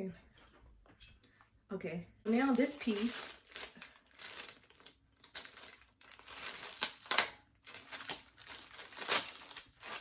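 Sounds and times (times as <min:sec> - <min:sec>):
packaging crinkling and rustling: 0:02.3 - 0:10.0.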